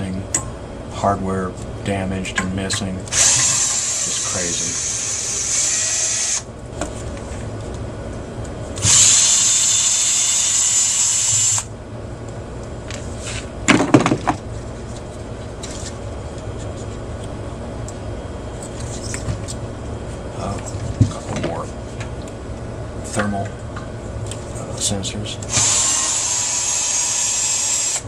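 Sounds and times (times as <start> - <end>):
cordless drill whirring: 3.1 - 6.5, 8.8 - 11.7, 25.5 - 28.0.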